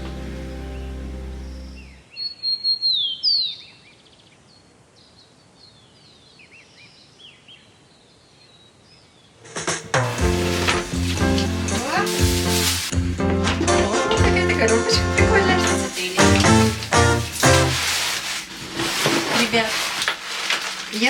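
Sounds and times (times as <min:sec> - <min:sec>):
background music: 0:00.0 - 0:02.0, 0:09.5 - 0:18.0
birds chirping and whistling: 0:00.6 - 0:03.9.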